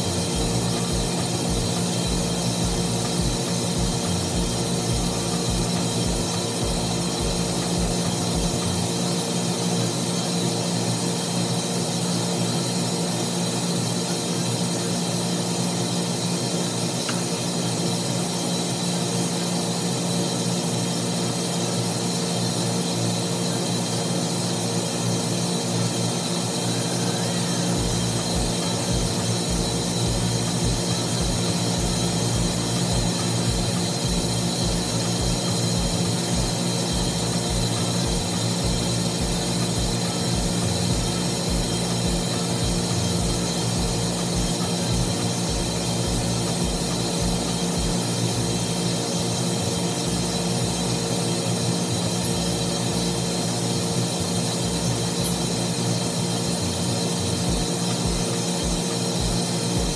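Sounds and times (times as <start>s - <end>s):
irregular low thumps: 0.0s - 8.9s, 27.8s - 48.7s, 57.5s - 59.9s
machinery drone with hiss: 0.0s - 59.9s.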